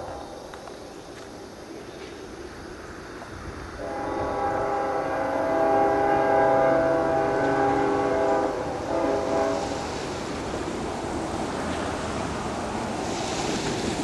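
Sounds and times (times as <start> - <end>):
train rumble: 0.0 - 14.0
locomotive air horn blasts: 3.8 - 9.8.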